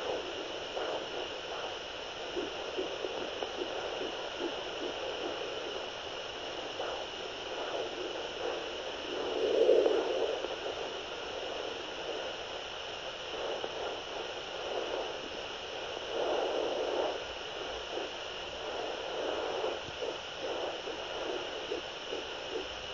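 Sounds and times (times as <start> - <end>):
doppler monitor static hiss: 0.0 - 22.9.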